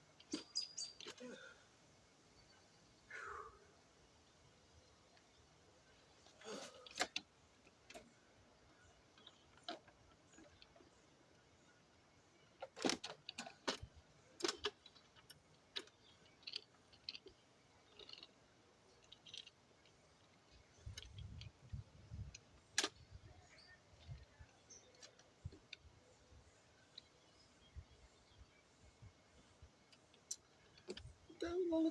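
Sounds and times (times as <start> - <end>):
clicks and knocks of handling: 9.1 - 10.9, 12.6 - 18.3, 29.9 - 31.1.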